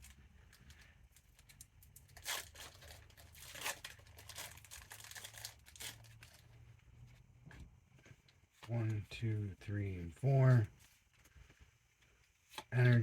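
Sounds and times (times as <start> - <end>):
foil wrapper crinkling: 0.0 - 6.5
foil wrapper tearing: 1.2 - 6.5.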